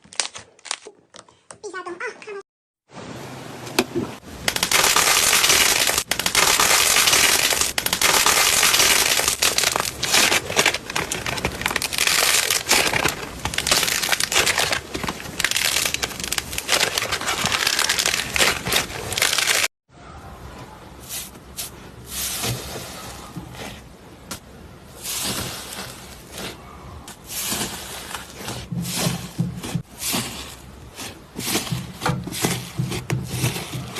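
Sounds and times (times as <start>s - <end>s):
slime crackling and popping: 4.4s - 19.7s.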